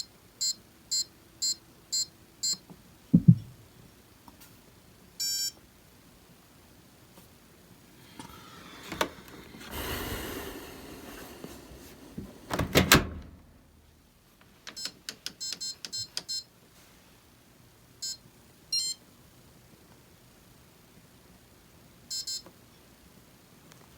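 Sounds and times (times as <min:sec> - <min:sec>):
loud clunks: 0:03.2 - 0:03.6.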